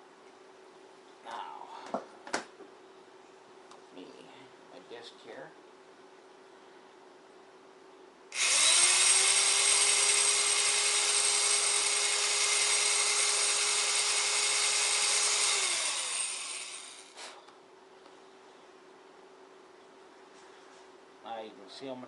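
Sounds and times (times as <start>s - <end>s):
electric drill boring plastic: 8.3s - 17.4s.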